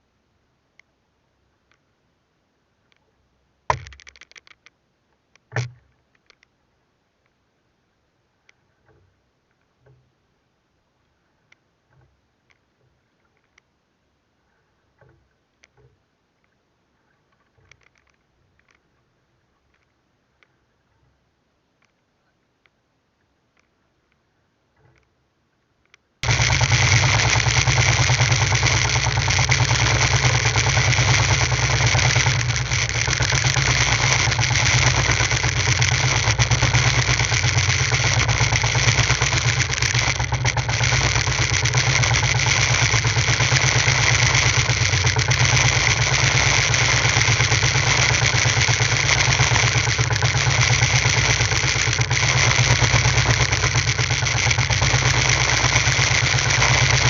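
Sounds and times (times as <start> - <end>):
boat engine running: 3.7 - 4.1, 26.2 - 57.0.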